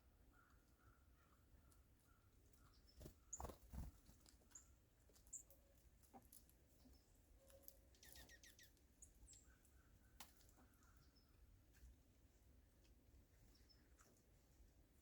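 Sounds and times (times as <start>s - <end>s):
small birds chirping: 0.2s - 11.8s, 13.3s - 14.6s.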